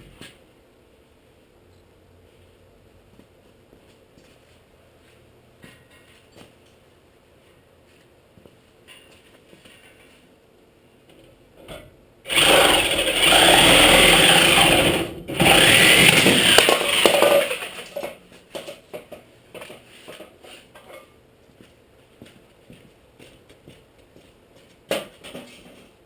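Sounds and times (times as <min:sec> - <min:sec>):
handheld power tool running: 0:12.3 - 0:18.0.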